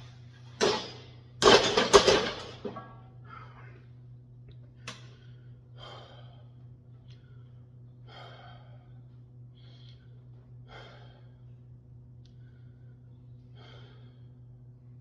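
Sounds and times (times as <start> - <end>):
steady low hum: 0.0 - 15.0
man breathing heavily: 5.0 - 14.9.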